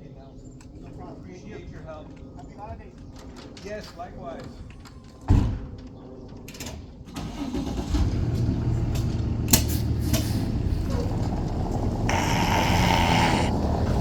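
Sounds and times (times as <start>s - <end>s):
truck engine starting and running: 7.2s - 12.1s
loud hiss: 12.1s - 13.5s.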